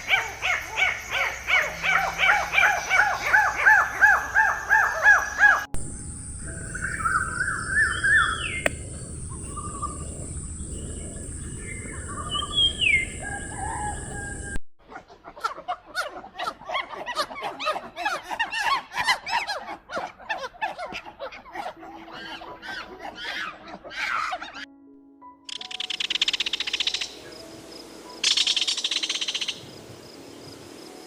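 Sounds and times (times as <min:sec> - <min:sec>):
birds chirping: 0:00.0 - 0:14.6
steady high hiss: 0:05.8 - 0:13.2.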